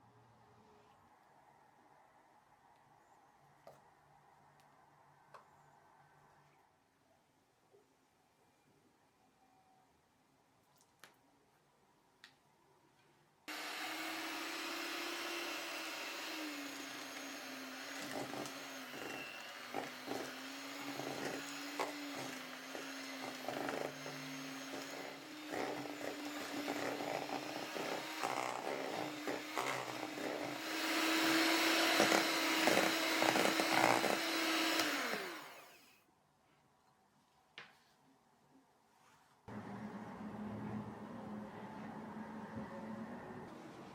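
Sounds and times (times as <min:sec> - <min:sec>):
electric mixer motor: 0:13.5 - 0:35.9.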